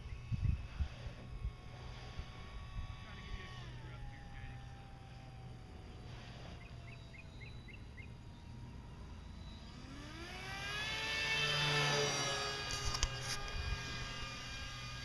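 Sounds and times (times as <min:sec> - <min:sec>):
electric motor and propeller whining: 0:00.0 - 0:15.0.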